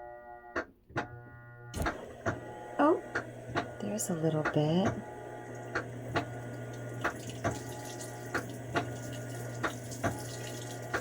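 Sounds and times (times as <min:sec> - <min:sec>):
washing machine hum: 0:00.9 - 0:11.0
water trickling into tub: 0:05.4 - 0:11.0.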